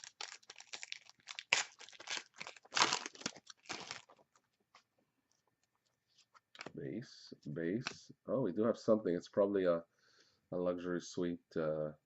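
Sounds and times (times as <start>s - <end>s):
foil wrapper crinkling and tearing: 0.0s - 4.4s.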